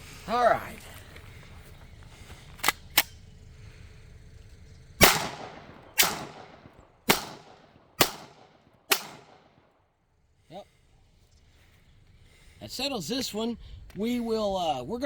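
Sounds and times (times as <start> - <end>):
pistol shots echoing: 5.0 - 9.6.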